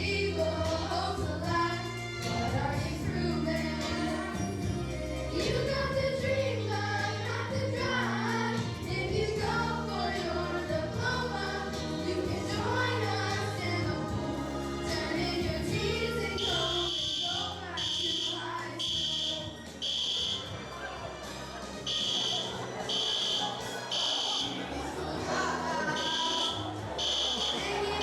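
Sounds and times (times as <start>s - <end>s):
children's choir singing: 0.0s - 28.0s
music: 0.0s - 28.0s
pulsing fire alarm tone: 16.4s - 20.5s, 21.9s - 24.6s, 26.0s - 27.6s.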